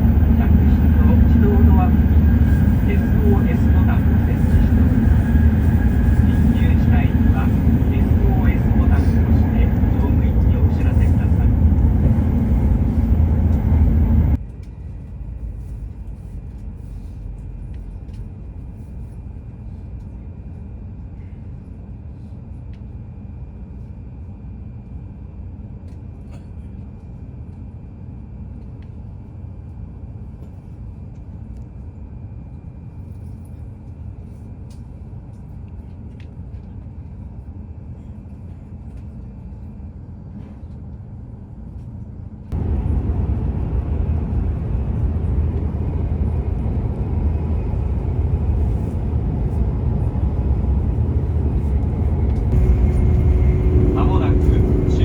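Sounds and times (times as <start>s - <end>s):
train rumble from inside car: 0.0s - 55.0s
faint high whine: 42.6s - 55.0s.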